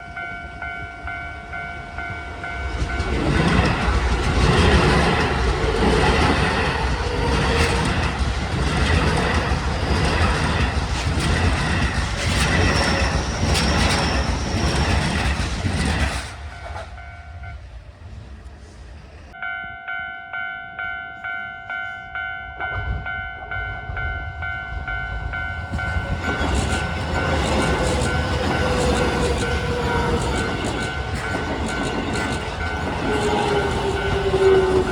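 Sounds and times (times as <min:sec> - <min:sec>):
level crossing alarm bell ringing: 0:00.0 - 0:07.1, 0:19.4 - 0:34.9
train wheels clattering over rail joints: 0:02.7 - 0:17.0, 0:25.6 - 0:34.9.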